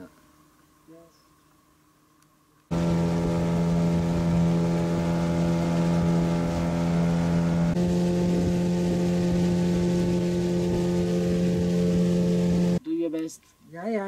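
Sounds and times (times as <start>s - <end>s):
outboard motor running: 2.7s - 12.8s.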